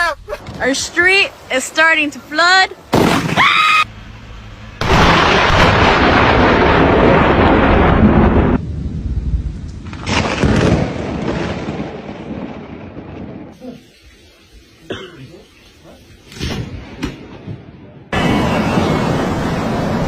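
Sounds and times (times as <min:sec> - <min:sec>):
thunder rumbling: 0:04.3 - 0:13.6, 0:16.7 - 0:20.0.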